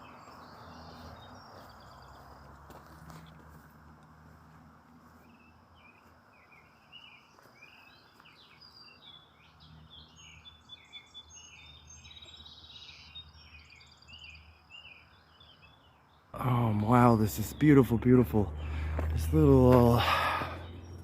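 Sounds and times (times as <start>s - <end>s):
birds singing and chirping: 0.0s - 21.0s.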